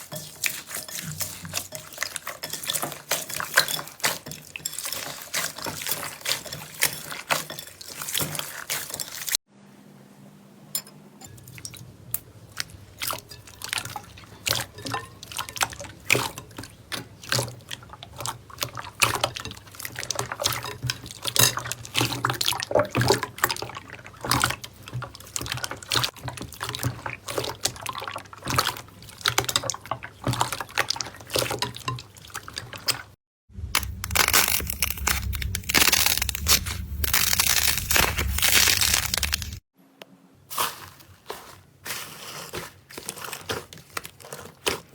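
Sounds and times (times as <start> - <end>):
low steady hum: 33.5 - 39.6.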